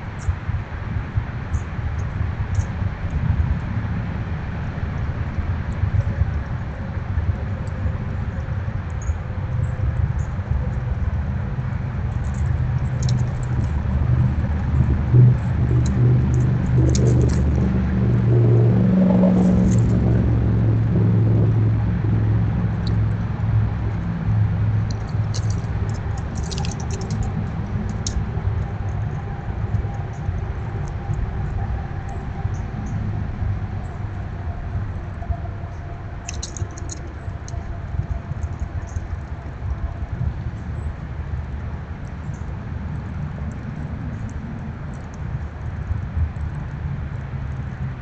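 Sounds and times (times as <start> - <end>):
road traffic rumbling: 0.0 - 48.0
vehicle passing: 13.3 - 35.0.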